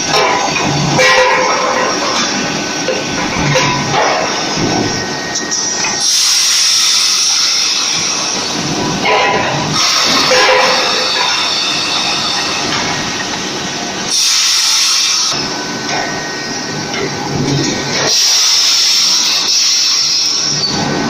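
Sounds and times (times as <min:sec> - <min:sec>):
forging machinery running: 0:00.0 - 0:21.0
loud hissing bursts: 0:06.0 - 0:08.5.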